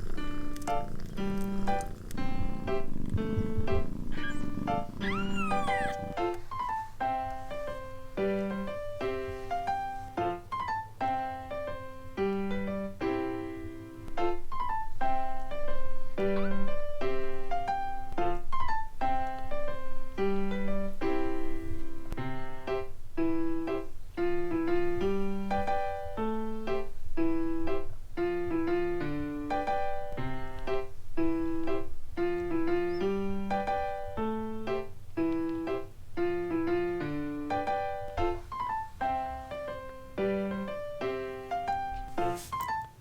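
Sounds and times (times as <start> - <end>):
piano music: 0.0 - 43.0.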